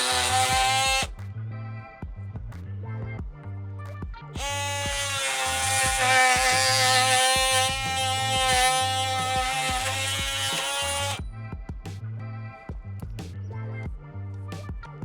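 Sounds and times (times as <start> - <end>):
oscillating multi-tool buzzing: 0.0 - 1.1, 4.4 - 11.2
background music with bass line: 0.0 - 15.0.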